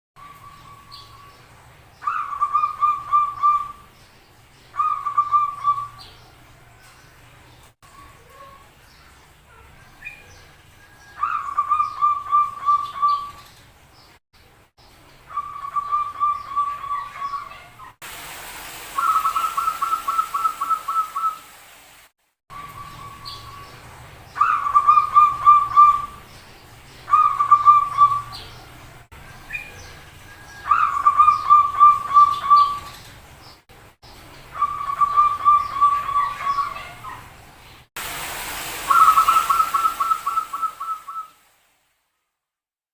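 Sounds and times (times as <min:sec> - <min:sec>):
doves cooing: 0:18.9 - 0:21.5, 0:24.4 - 0:26.2, 0:27.1 - 0:28.4, 0:30.4 - 0:33.0, 0:34.5 - 0:37.3.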